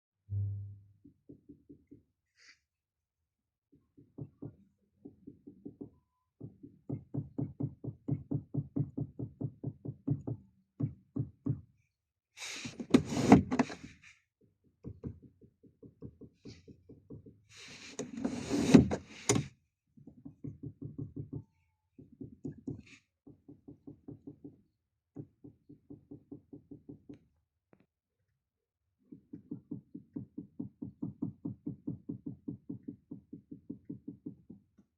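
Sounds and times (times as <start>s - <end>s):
seat belt adjuster rapid knocking: 12.6s - 13.9s, 17.6s - 19.5s.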